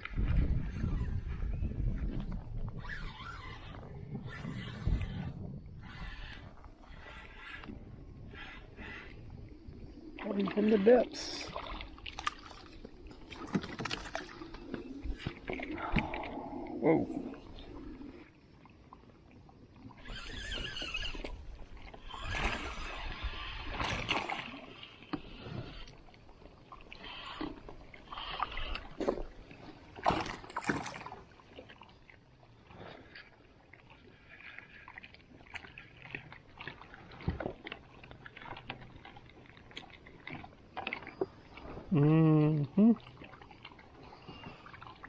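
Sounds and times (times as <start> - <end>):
water sloshing around kayak: 0.0 - 45.0.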